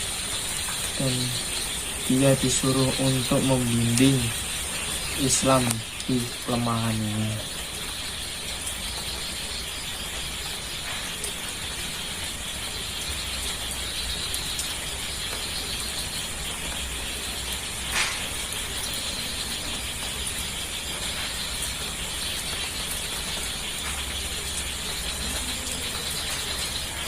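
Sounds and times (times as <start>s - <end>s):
high-pitched buzzing hiss: 0.0s - 27.0s
sharp click: 17.9s - 18.3s.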